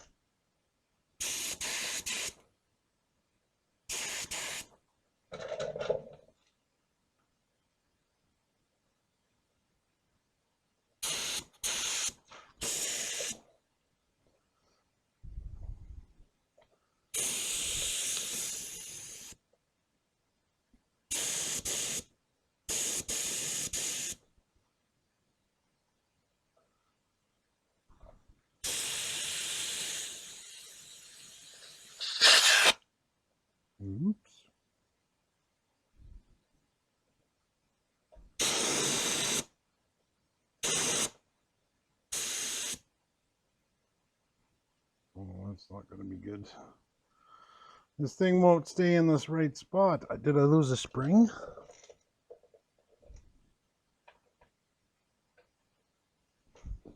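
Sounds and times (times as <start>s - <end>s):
paint spray gun hissing: 1.2s - 2.4s, 3.9s - 4.6s, 11.0s - 13.4s, 17.2s - 19.4s, 21.1s - 22.0s, 22.7s - 24.2s, 28.6s - 32.8s, 38.4s - 39.4s, 40.6s - 41.1s, 42.2s - 42.8s.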